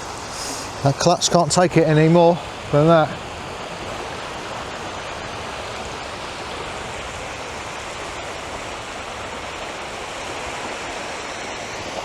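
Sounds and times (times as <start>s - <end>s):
sea surf washing onto beach: 0.0s - 12.0s.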